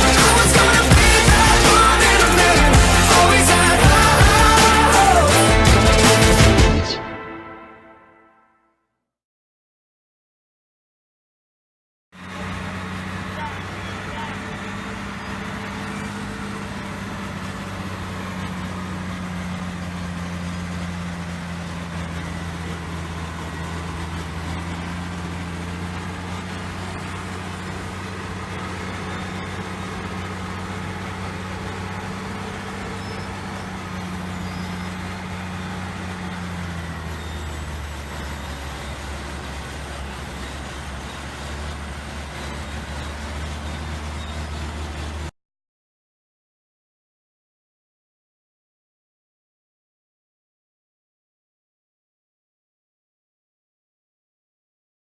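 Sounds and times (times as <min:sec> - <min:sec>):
heavy diesel engine running: 0:00.0 - 0:07.4, 0:12.2 - 0:45.3.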